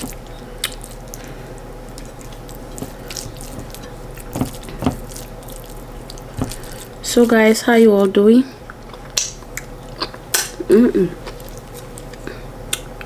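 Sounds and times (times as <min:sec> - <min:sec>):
wet chewing mouth clicks: 0:00.0 - 0:01.2
steady background hum: 0:00.0 - 0:13.0.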